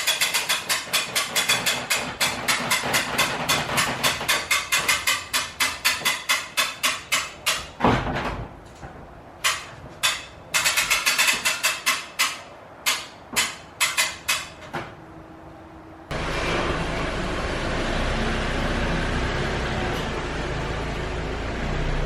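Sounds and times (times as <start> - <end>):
road and engine noise: 0.0 - 22.0
ratchet-like clicks: 9.4 - 14.5.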